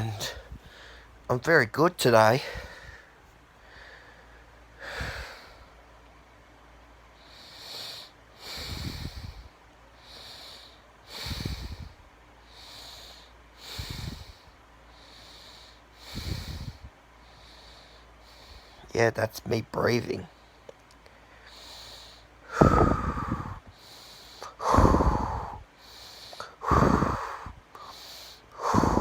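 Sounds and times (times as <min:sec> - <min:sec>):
man breathing heavily: 0:00.0 - 0:01.3, 0:02.3 - 0:06.0, 0:07.0 - 0:19.0, 0:20.3 - 0:29.0
puffs of air on microphone: 0:08.4 - 0:09.5.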